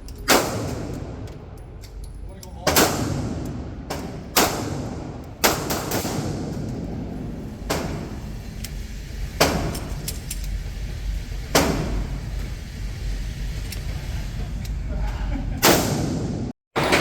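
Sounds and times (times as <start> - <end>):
loud gunshots: 4.3 - 6.6.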